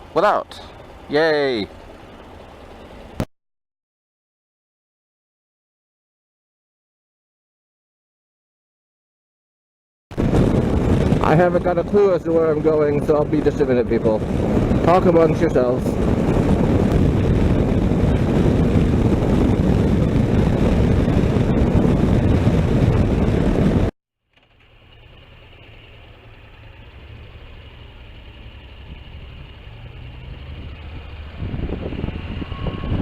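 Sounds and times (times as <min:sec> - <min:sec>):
low engine hum: 0:00.0 - 0:03.3, 0:10.2 - 0:33.0
rushing wind and road noise: 0:00.0 - 0:03.3, 0:10.1 - 0:24.0, 0:25.6 - 0:33.0.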